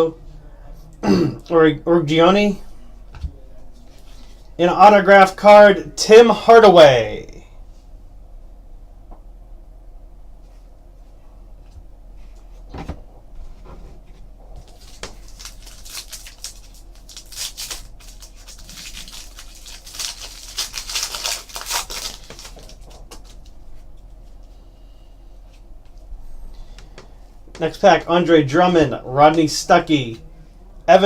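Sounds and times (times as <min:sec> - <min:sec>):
cards being handled: 0:14.6 - 0:23.6
wrapper crinkling and ripping: 0:14.6 - 0:23.6.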